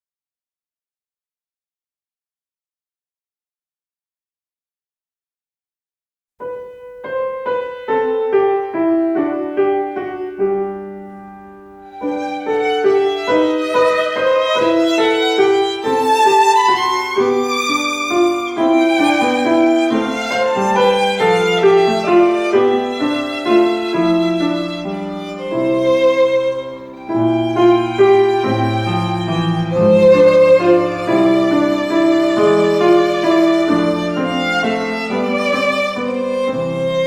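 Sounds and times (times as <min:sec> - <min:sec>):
instrumental violin music: 0:11.8 - 0:37.0.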